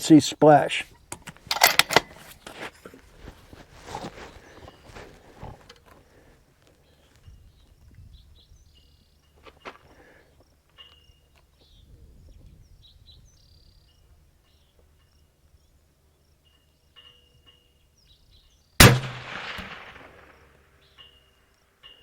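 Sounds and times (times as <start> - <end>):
birds chirping faintly: 0.0 - 22.0
suppressed rifle shot with echo: 18.8 - 20.6.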